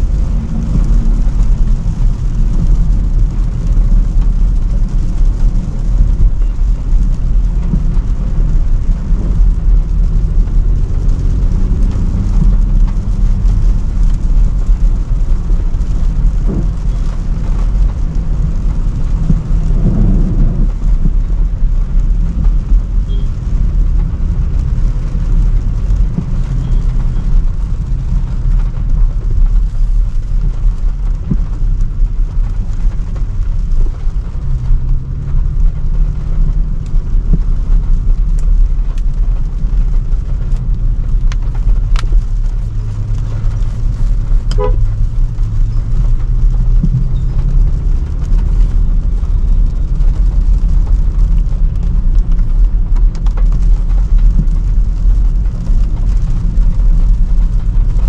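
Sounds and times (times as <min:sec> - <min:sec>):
car engine and road rumble: 0:00.0 - 0:58.0
car horn toot: 0:23.1 - 0:23.3, 0:44.5 - 0:44.9.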